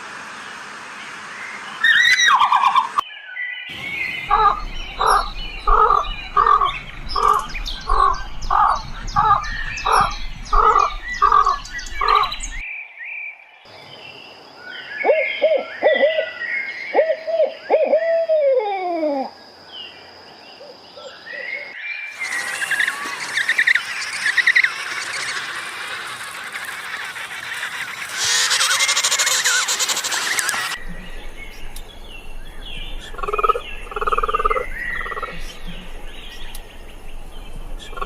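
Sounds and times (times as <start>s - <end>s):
high bird chirping: 3.7s - 12.7s, 21.4s - 38.0s
short repeated bird calls: 21.4s - 30.8s
bird calls sliding down in pitch: 22.1s - 30.8s.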